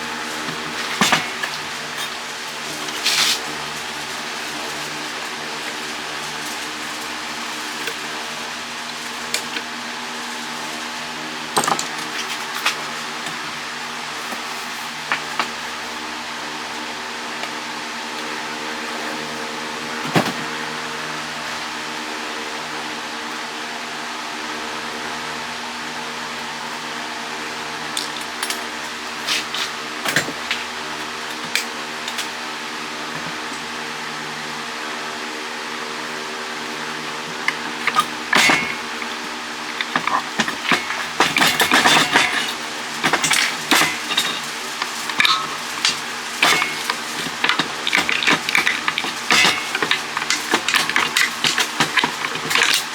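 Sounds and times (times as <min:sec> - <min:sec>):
electric fan humming: 0:00.0 - 0:52.9
metal parts clinking: 0:27.9 - 0:30.6, 0:37.3 - 0:52.9.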